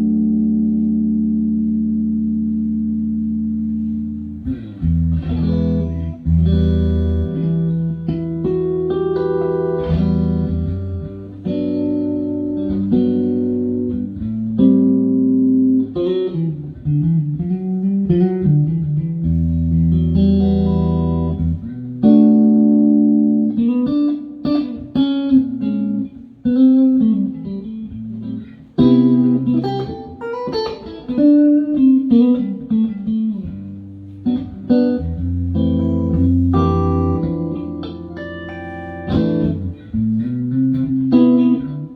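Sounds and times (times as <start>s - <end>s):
electric guitar playing: 0.0s - 41.9s.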